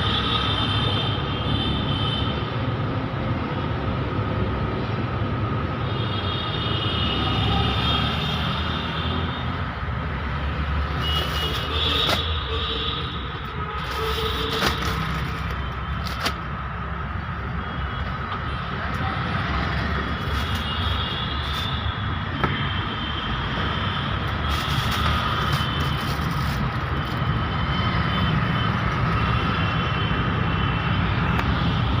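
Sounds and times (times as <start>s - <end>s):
vehicle engine rumble: 9.6s - 29.5s.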